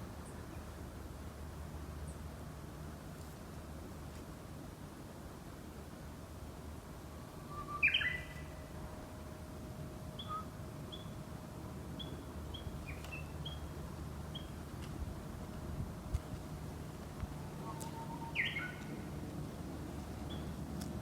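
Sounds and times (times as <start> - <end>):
faint steady hum: 0.0 - 21.0
loud sweeping bird call: 7.4 - 8.6, 17.4 - 19.2
short high bird chirps: 7.6 - 8.4, 17.7 - 18.8.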